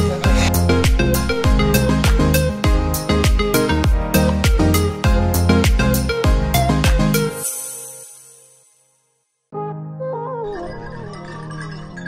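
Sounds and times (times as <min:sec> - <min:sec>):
background music with melodic runs: 0:00.0 - 0:08.6.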